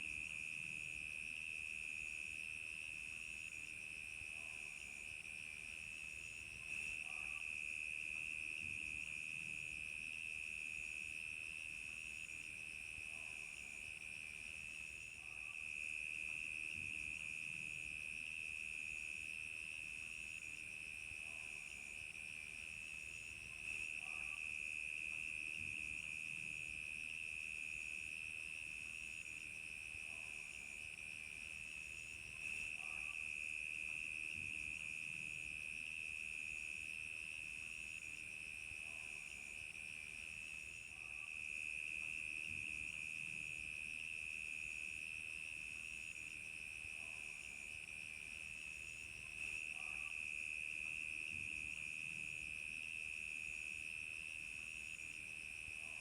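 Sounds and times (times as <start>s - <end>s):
cricket chirping: 0.1s - 56.0s.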